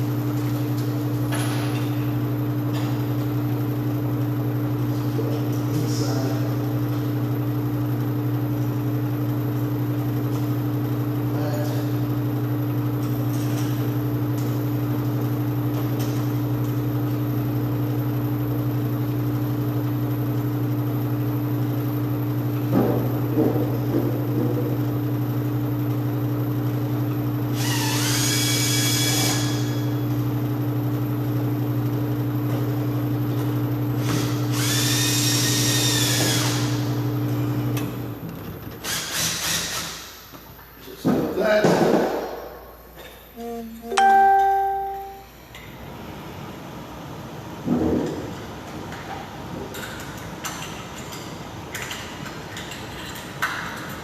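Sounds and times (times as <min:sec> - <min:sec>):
power drill driving screws: 0:34.1 - 0:36.8, 0:38.8 - 0:40.1.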